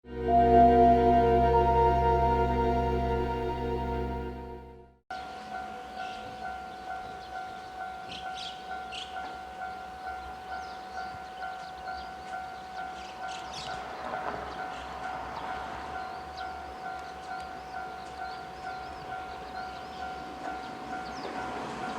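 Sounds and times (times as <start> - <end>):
level crossing electronic bell: 0.1 - 5.0.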